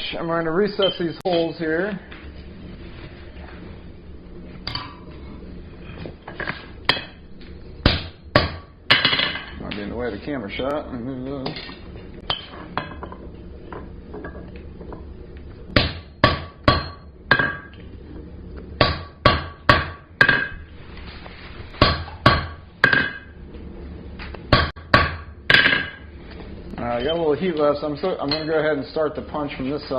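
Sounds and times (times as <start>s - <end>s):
hammer striking metal punch: 7.8s - 9.5s, 15.8s - 17.7s, 18.8s - 20.6s, 21.8s - 23.3s, 24.5s - 26.0s.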